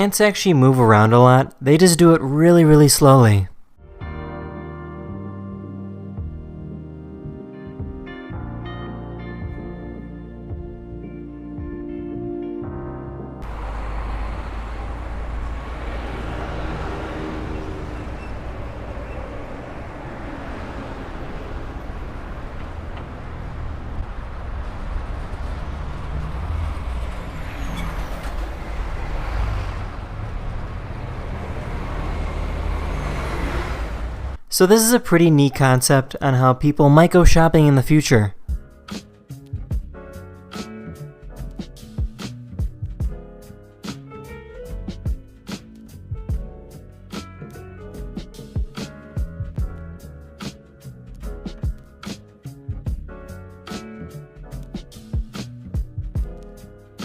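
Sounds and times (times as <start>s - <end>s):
road traffic rumble: 13.4s - 34.5s.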